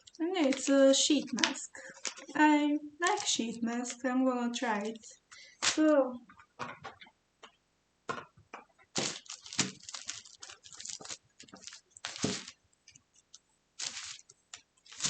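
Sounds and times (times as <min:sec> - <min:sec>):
packaging crinkling and rustling: 0:00.0 - 0:02.4, 0:03.0 - 0:05.9, 0:08.9 - 0:15.0.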